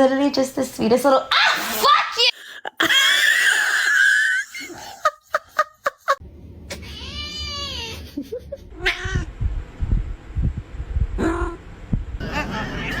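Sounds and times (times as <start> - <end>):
low thumps and rumble: 6.2 - 12.4
cat meowing: 6.8 - 8.0, 8.8 - 9.3, 12.2 - 13.0.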